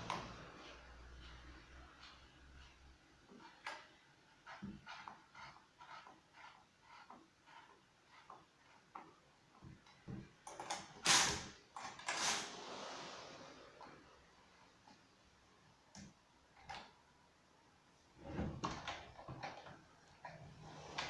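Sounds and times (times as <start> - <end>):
sliding scraping sounds: 12.0 - 15.0, 20.2 - 21.0.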